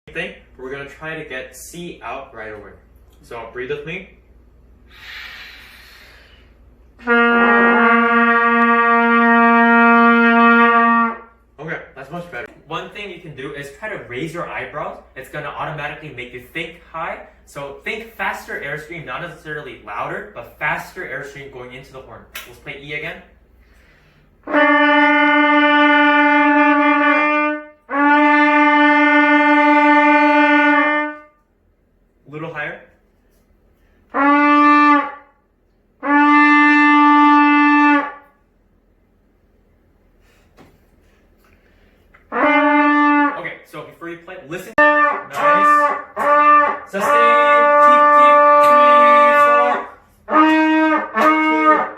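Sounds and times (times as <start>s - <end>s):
trumpet holding a low note: 7.0s - 11.4s, 24.4s - 31.4s, 34.1s - 35.4s, 36.0s - 38.2s, 42.3s - 43.9s, 44.5s - 51.9s.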